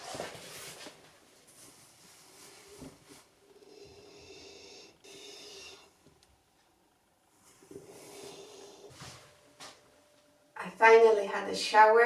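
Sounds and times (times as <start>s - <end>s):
person breathing deeply: 3.4s - 6.0s, 7.8s - 9.2s.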